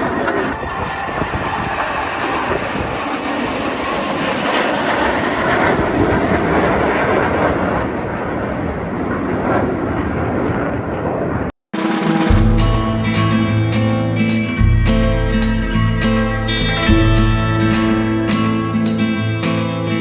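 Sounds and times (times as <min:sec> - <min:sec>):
aircraft engine rush: 0:00.0 - 0:11.0.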